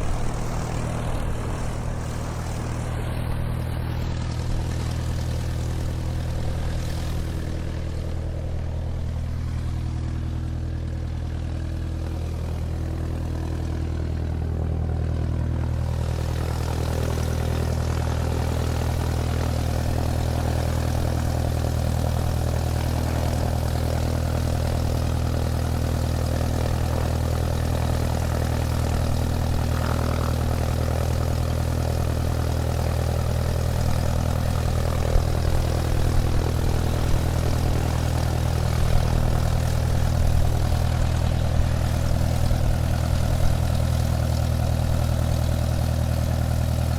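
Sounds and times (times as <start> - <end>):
airplane engine drone: 0.0 - 46.9.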